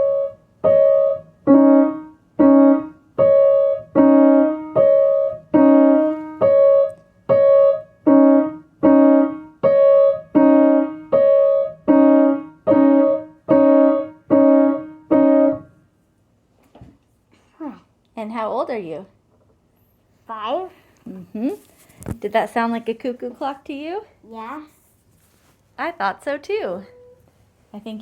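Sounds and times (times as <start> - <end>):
simple two-note piano tune: 0.0 - 15.7.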